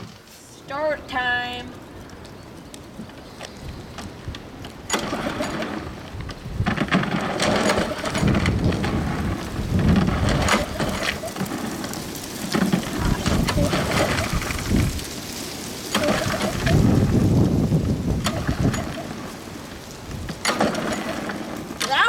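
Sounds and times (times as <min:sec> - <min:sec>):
mower engine turning over: 0:03.0 - 0:22.0.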